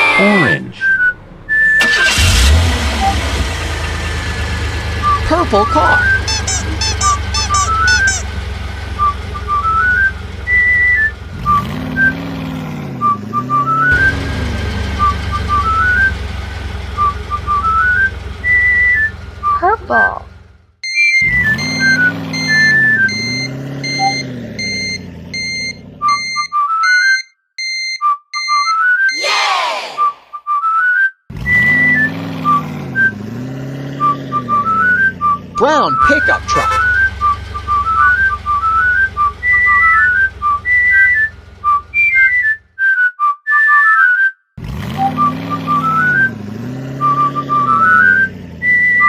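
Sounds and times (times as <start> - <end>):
car engine sound effect: 0.0 - 26.5, 31.3 - 42.7, 44.6 - 49.0
cheerful whistled tune: 0.1 - 2.2, 5.0 - 8.2, 9.0 - 12.2, 13.0 - 16.2, 17.0 - 19.6, 20.9 - 33.2, 34.0 - 49.0
low hum: 0.8 - 11.3.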